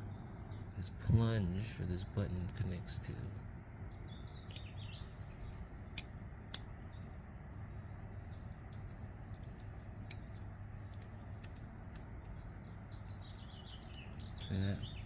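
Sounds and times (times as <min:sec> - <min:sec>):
steady low hum: 0:00.0 - 0:15.0
sharp metal clicks: 0:03.9 - 0:14.6.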